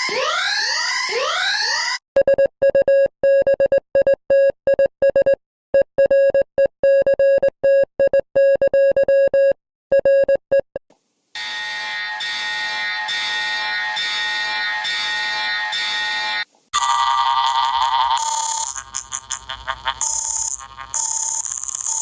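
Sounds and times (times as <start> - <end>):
chord-like alarm tone: 11.4 - 16.9.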